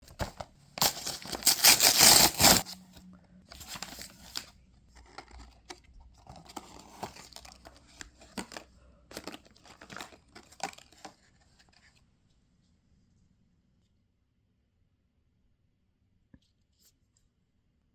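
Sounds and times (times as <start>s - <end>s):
packaging rustling: 0.1s - 2.8s, 3.5s - 5.5s, 6.3s - 11.8s
packaging tearing: 0.2s - 2.8s, 3.6s - 4.5s.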